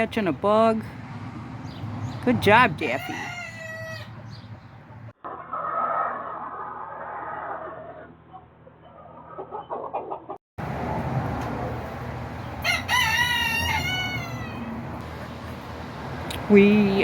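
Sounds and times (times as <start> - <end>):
rooster crowing: 2.8 - 4.4, 12.5 - 15.4
chickens clucking: 8.9 - 10.4.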